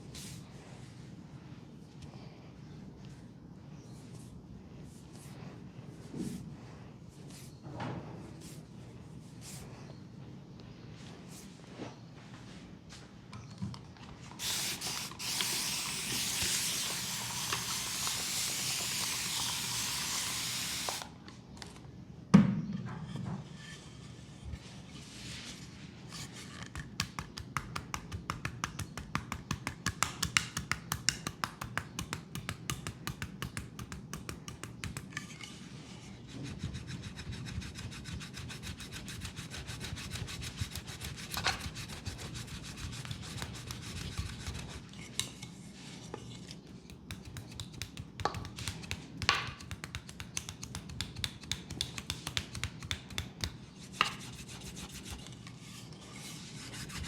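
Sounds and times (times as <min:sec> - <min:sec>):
hands rubbing a leg: 0:38.9 - 0:56.0.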